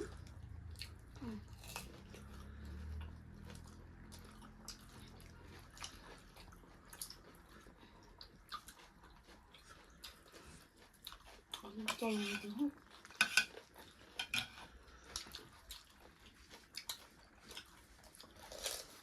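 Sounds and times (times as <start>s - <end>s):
people chewing and lip smacking: 0.0s - 19.0s.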